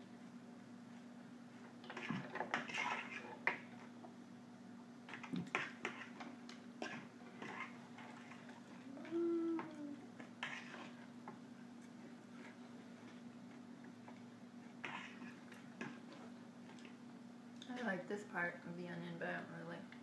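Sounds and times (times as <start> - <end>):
toddler vocal sounds: 8.8 - 10.0.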